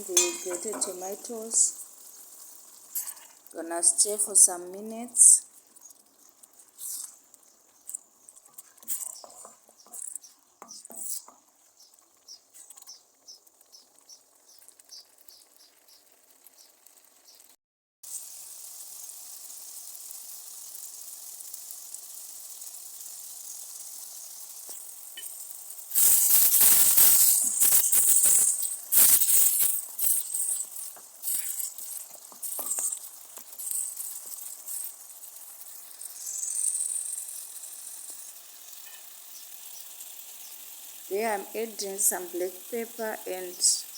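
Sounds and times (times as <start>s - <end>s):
utensil stirring and scraping pan: 0.0s - 4.4s, 5.5s - 7.3s, 8.4s - 11.5s, 21.7s - 43.0s
vegetables sizzling in oil: 0.0s - 43.9s.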